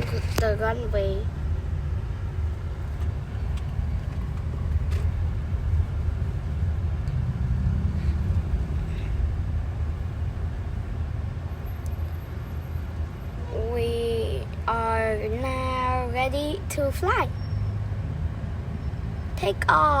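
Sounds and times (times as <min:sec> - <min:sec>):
airliner engine rumble: 0:00.0 - 0:12.2.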